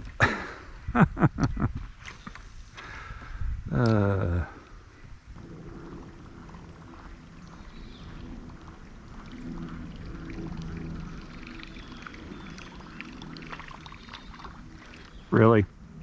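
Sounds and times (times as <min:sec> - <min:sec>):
low droning hum: 0:00.0 - 0:16.0
creek water trickling and splashing: 0:04.7 - 0:15.7.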